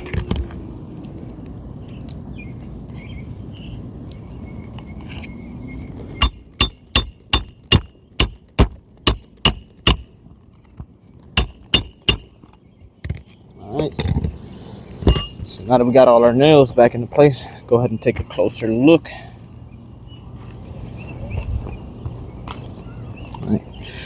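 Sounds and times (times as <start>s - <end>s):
hammer striking nail: 6.2s - 10.1s, 11.4s - 12.4s.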